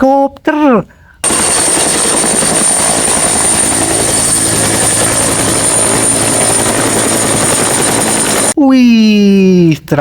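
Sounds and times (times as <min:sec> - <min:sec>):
helicopter rotor and engine: 0:01.2 - 0:08.6.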